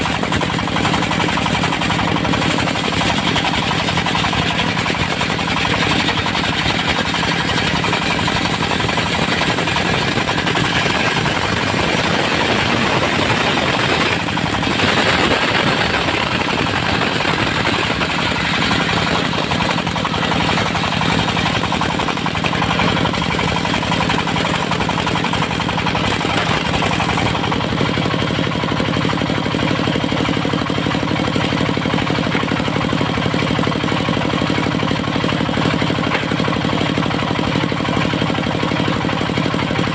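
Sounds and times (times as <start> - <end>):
diesel engine hammering: 0.0 - 39.9
circular saw blade ripping wood: 0.1 - 27.8.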